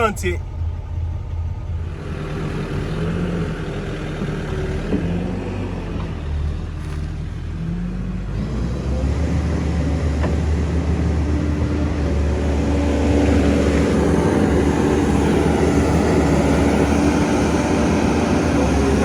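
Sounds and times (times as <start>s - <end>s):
truck diesel engine running: 0.0s - 4.8s.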